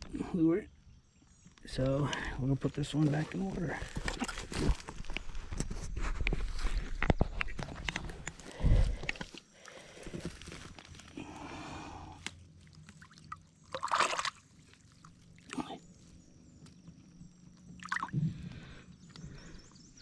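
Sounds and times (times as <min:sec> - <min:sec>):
water sloshing and splashing: 0:12.6 - 0:15.6, 0:17.7 - 0:18.2.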